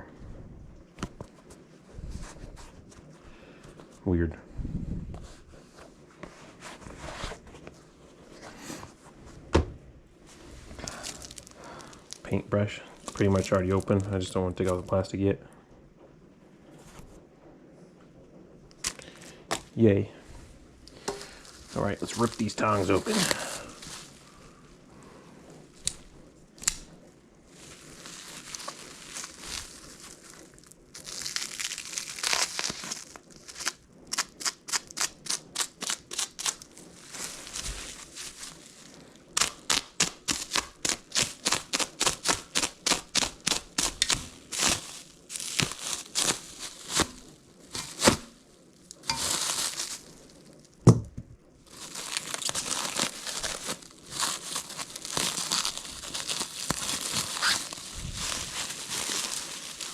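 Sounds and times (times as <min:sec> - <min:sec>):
plastic packaging tearing and crinkling: 0:10.4 - 0:15.1, 0:18.7 - 0:19.9, 0:20.8 - 0:24.6, 0:25.5 - 0:50.8, 0:51.6 - 0:59.9.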